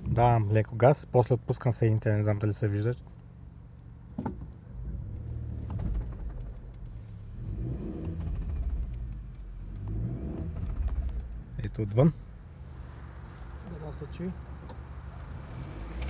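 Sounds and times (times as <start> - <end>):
car engine rumbling under load: 0.0 - 16.0
sharp clutch click: 5.0 - 11.6
small scattered clicks: 8.2 - 11.6.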